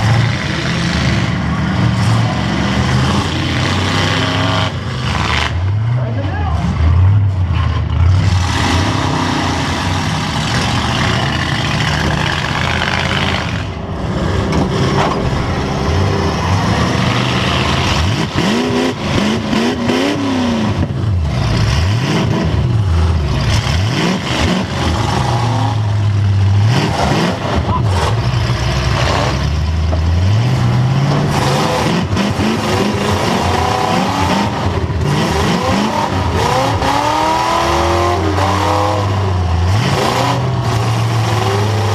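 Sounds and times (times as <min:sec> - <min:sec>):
car engine revving: 0:00.0 - 0:41.9.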